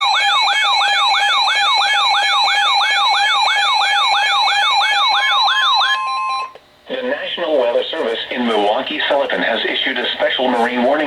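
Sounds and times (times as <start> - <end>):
yelping electronic alert siren: 0.0 - 6.6.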